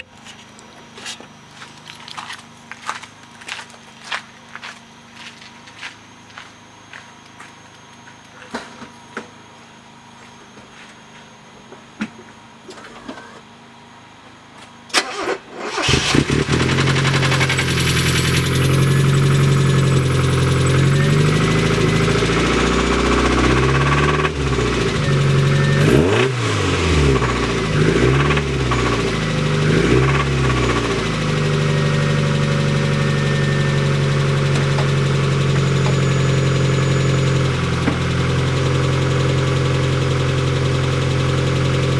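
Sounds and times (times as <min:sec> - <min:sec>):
car engine starting and revving: 0:14.9 - 0:41.9.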